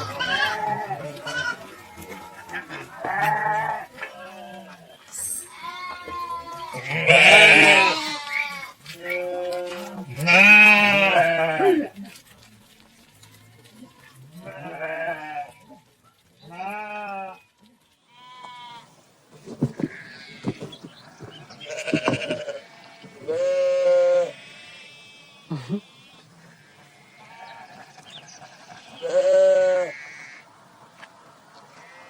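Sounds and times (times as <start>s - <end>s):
sheep bleating: 0.0s - 12.0s, 14.4s - 15.6s, 16.4s - 17.4s, 18.1s - 18.9s, 21.6s - 25.3s, 26.4s - 30.4s.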